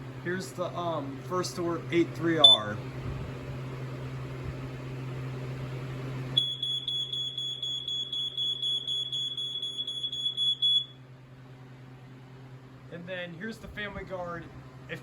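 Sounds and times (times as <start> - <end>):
smoke alarm high-pitched tone: 6.4 - 11.0.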